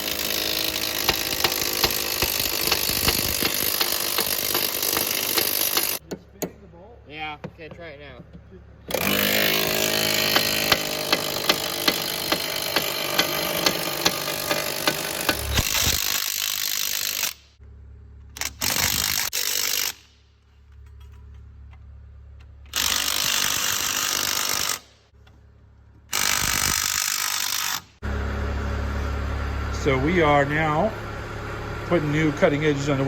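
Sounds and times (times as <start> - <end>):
impact wrench hammering: 0.0 - 6.6, 7.4 - 17.5, 22.7 - 25.0.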